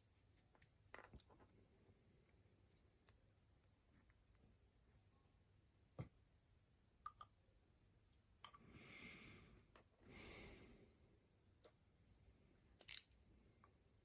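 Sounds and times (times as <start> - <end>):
soft breaths: 8.6 - 11.2
metal lock parts clicking: 12.8 - 13.2.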